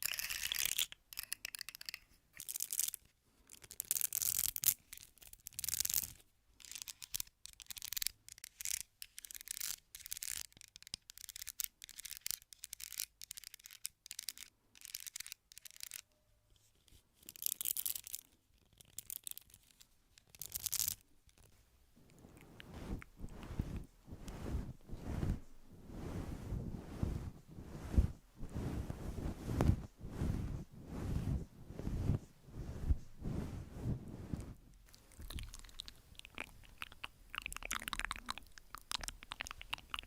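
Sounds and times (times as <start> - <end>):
crisp brushing and rubbing: 17.4 - 40.0.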